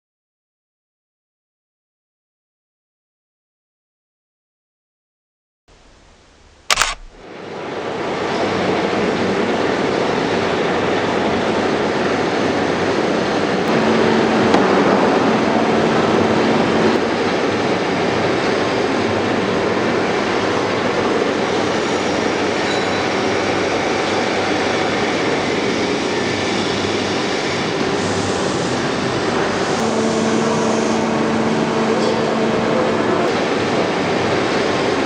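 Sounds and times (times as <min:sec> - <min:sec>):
low hum with overtone: 0:05.7 - 0:07.2, 0:13.6 - 0:17.6, 0:27.3 - 0:35.0
industrial machinery running: 0:06.7 - 0:35.0.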